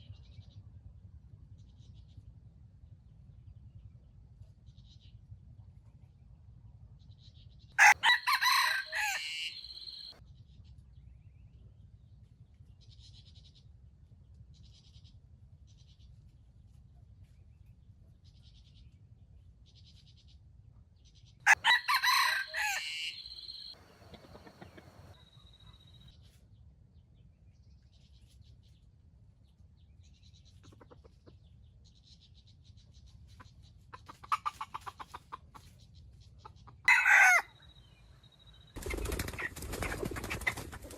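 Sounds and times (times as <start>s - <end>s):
chicken clucking: 7.8s - 10.1s, 21.5s - 25.9s, 30.5s - 31.5s, 33.2s - 37.4s, 38.8s - 40.9s
rooster crowing: 7.8s - 10.1s, 21.5s - 24.9s, 36.9s - 37.6s
faint chirping: 9.0s - 10.2s, 22.4s - 26.1s.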